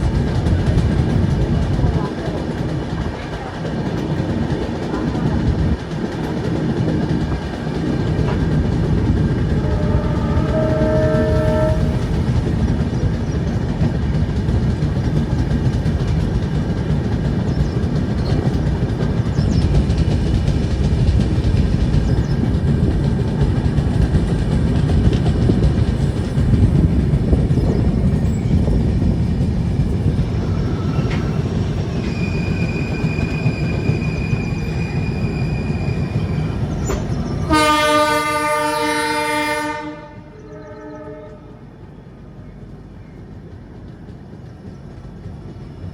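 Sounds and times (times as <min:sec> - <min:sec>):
train wheels rumbling on track: 0:00.0 - 0:45.9
locomotive horn blast: 0:09.5 - 0:12.3, 0:37.5 - 0:41.6.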